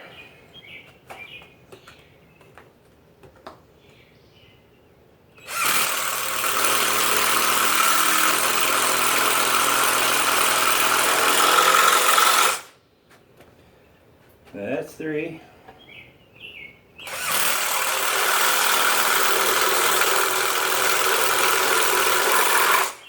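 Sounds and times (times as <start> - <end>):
power drill driving screw into log: 5.4 - 12.7, 17.1 - 23.0.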